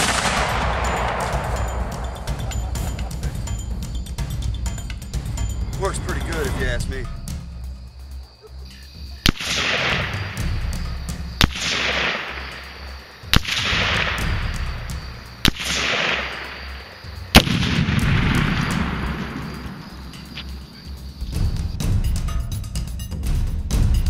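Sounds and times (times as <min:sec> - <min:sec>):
rifle shots with echo: 0:00.0 - 0:02.9, 0:09.2 - 0:10.4, 0:11.4 - 0:14.4, 0:15.4 - 0:16.8, 0:17.4 - 0:20.0
background music: 0:00.0 - 0:24.0.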